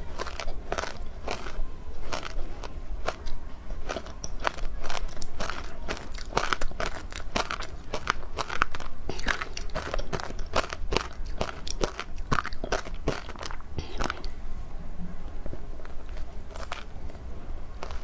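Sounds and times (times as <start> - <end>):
crunchy ice being chewed: 0.0 - 14.4, 15.3 - 18.0.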